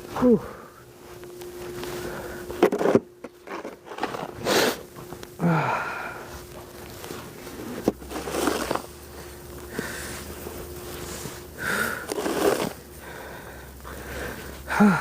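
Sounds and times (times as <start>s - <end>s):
person sighing: 0.1s - 0.8s, 5.4s - 6.3s, 13.0s - 15.0s
person sniffing: 4.4s - 4.8s
person breathing hard: 4.4s - 6.4s, 9.1s - 15.0s.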